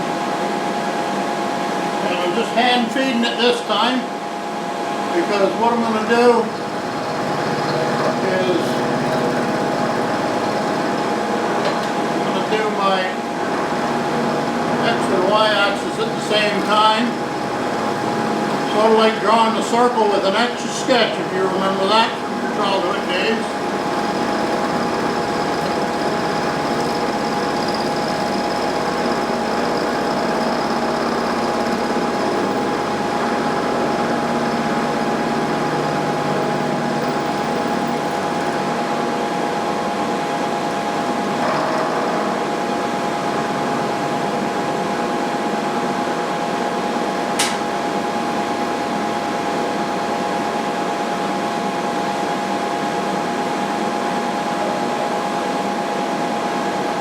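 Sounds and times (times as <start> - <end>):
milling machine whining: 5.0 - 50.1
sharp click: 47.4 - 47.6.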